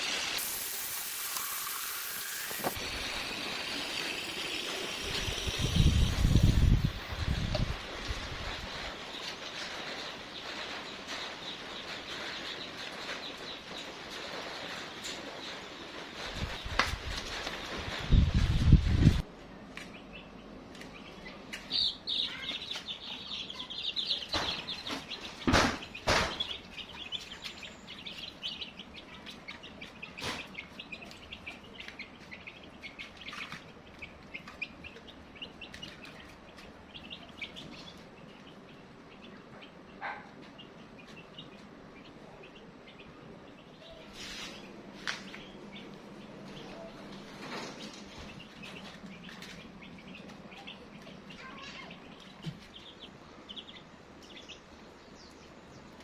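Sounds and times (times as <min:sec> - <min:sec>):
chicks peeping: 0:04.6 - 0:56.0
sharp knocks: 0:24.3 - 0:26.6.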